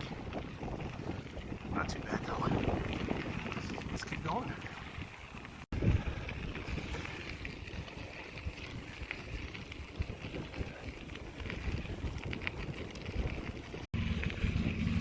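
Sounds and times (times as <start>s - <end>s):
bike tyres rolling on gravel: 0.0s - 15.0s
wind buffeting microphone: 0.0s - 15.0s.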